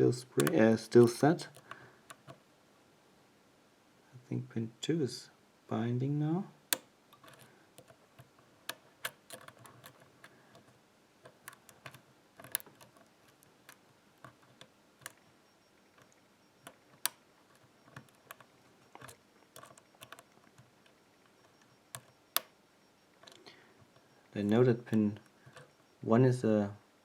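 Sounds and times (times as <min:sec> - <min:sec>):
lock pick metallic clicks: 0:00.2 - 0:02.4, 0:06.7 - 0:25.8.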